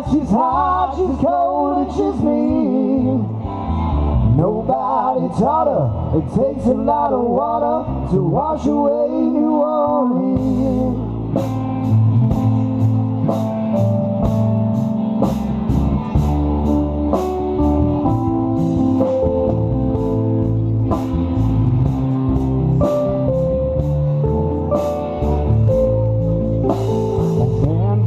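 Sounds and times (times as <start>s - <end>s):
bass guitar: 0.0s - 28.0s
electric guitar: 0.0s - 28.0s
drum kit: 10.4s - 28.0s.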